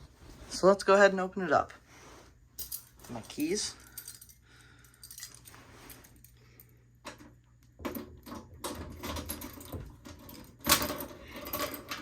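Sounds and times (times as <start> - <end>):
keys and metal cabinet handled: 2.6 - 6.4, 7.1 - 12.0
small metallic clicks and rattles: 2.6 - 12.0.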